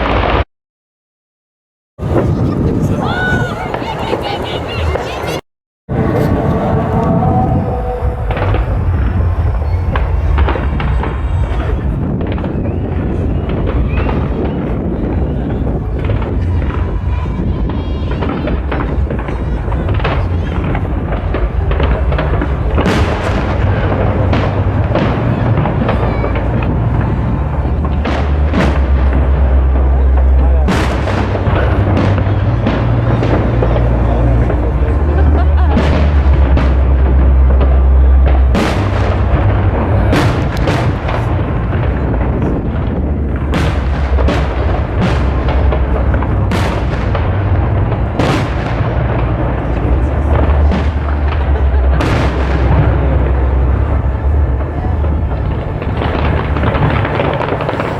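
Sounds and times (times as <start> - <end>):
fireworks booming: 0.0 - 0.4, 2.0 - 57.9
fireworks crackling: 0.0 - 0.4, 2.0 - 57.9
fireworks whistles: 6.2 - 17.1, 17.7 - 42.5, 50.5 - 57.9.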